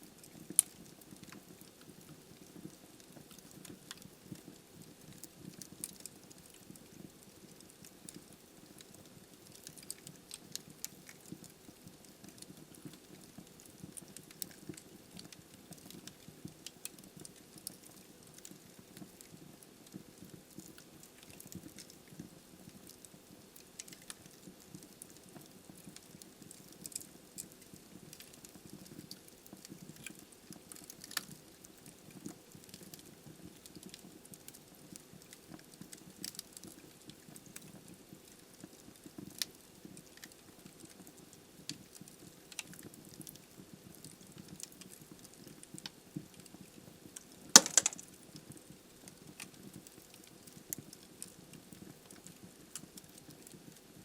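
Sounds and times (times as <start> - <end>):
soft flame rustle: 0.0 - 54.0
burning logs crackling: 0.1 - 54.0
loud pop from fire: 47.5 - 48.0.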